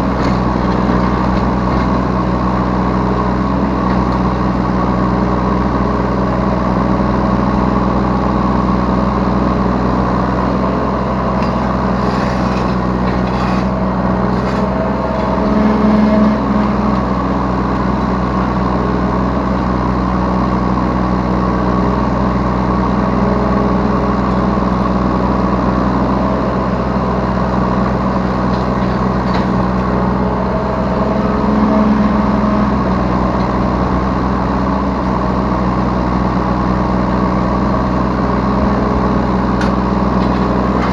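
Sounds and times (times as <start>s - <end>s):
excavator diesel engine running: 0.0s - 40.9s
short clatters: 11.4s - 17.0s.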